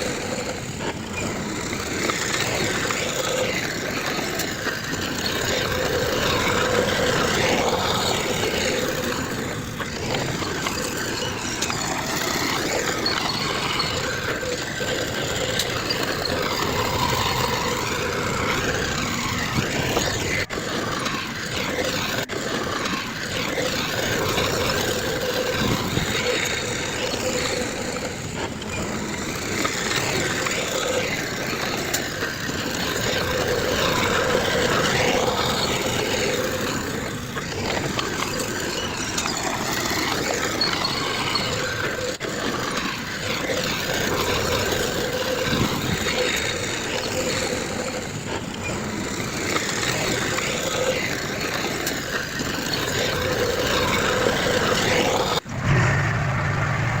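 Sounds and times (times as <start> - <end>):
diesel machinery engine drone: 52.8 - 57.0.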